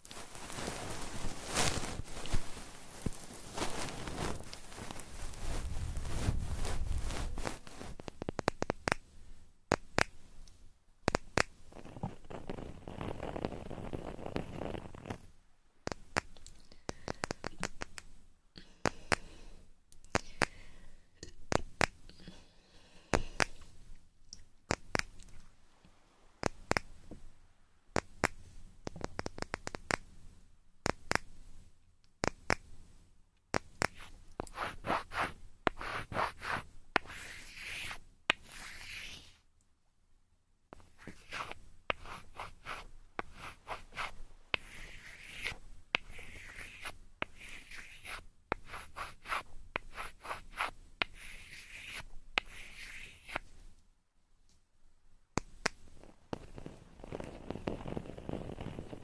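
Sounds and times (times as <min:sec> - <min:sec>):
scratching on microphone: 0:00.0 - 0:09.0, 0:11.1 - 0:15.3, 0:33.6 - 0:39.4, 0:40.8 - 0:53.5, 0:55.9 - 0:59.0.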